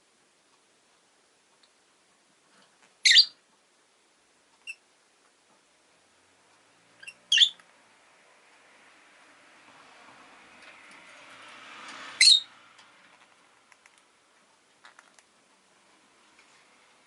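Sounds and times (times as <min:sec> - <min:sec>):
lovebird chirping: 0:03.0 - 0:03.4, 0:04.6 - 0:04.8, 0:07.0 - 0:07.6, 0:12.2 - 0:12.5.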